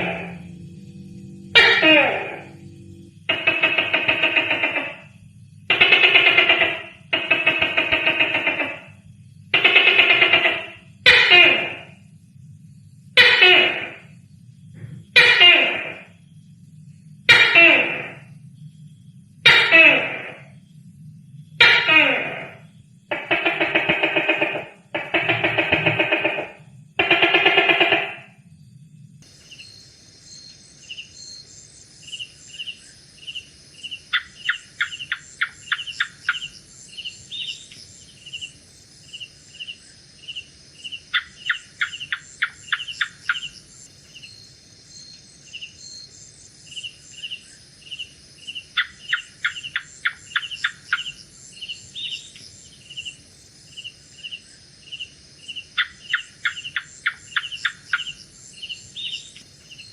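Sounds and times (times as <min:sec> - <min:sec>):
loud pitched call: 0:00.0 - 0:05.0
night insects trilling: 0:00.0 - 0:59.9
gecko chirping in sharp clicks: 0:55.8 - 0:59.2.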